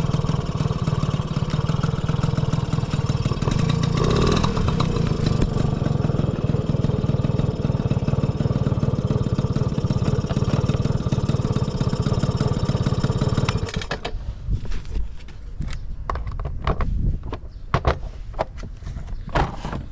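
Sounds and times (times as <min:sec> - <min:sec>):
two-stroke engine idling: 0:00.0 - 0:14.0.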